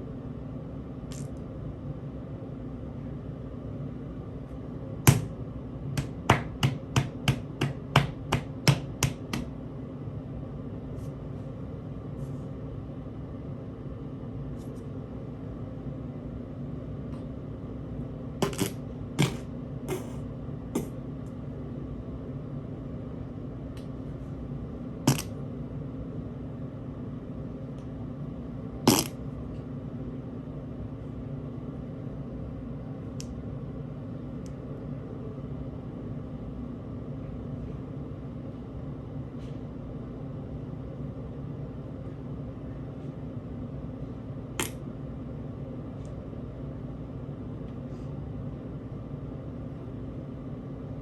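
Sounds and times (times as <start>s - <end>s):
steady low hum: 0.0s - 51.0s.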